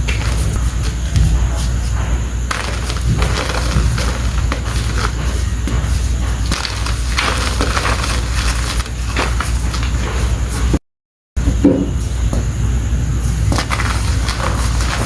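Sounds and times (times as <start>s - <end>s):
chalk crunching and crumbling: 2.5s - 10.6s, 13.5s - 15.0s.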